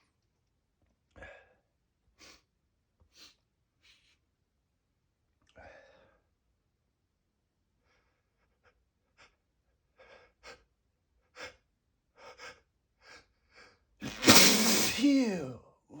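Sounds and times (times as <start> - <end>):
man sneezing: 14.0 - 15.6.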